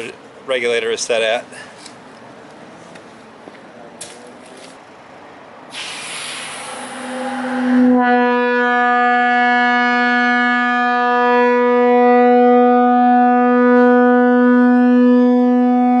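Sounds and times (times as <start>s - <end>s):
locomotive air horn blowing: 5.7s - 16.0s.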